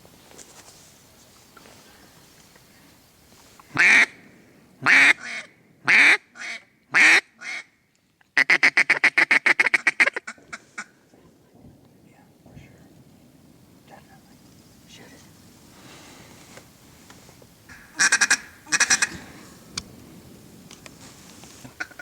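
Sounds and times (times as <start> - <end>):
duck call quacks: 3.8 - 4.2, 4.8 - 7.7, 8.4 - 10.9, 17.7 - 19.2, 21.8 - 22.0
duck call fast chatter: 17.9 - 19.2.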